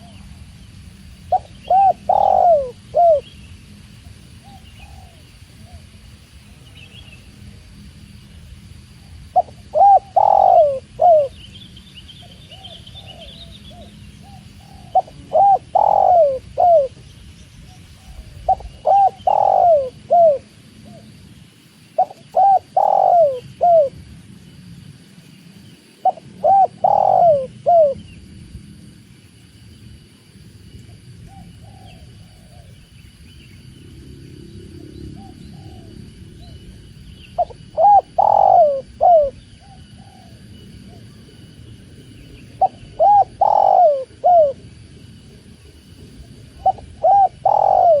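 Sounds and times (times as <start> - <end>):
dove cooing: 1.3 - 3.3, 4.0 - 6.0, 9.0 - 11.4, 12.2 - 17.0, 17.9 - 21.2, 22.0 - 24.0, 26.0 - 28.0, 30.9 - 32.8, 35.2 - 36.6, 37.4 - 41.4, 42.4 - 44.8, 46.1 - 48.0.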